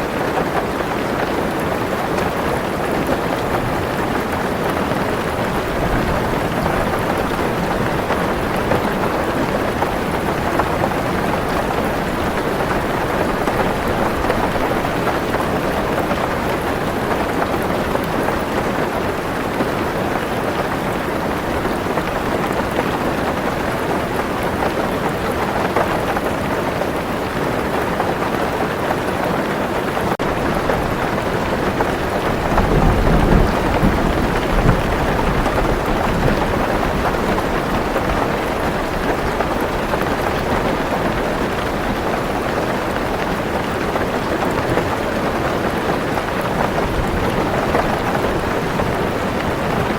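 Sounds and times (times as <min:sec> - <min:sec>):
heavy rain on car roof: 0:00.0 - 0:49.9
low thunder rumble: 0:30.3 - 0:39.8.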